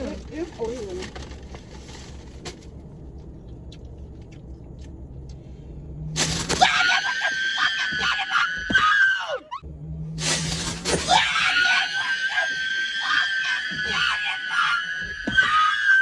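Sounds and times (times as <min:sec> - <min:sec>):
woman screaming: 0:06.6 - 0:09.6, 0:11.1 - 0:16.0.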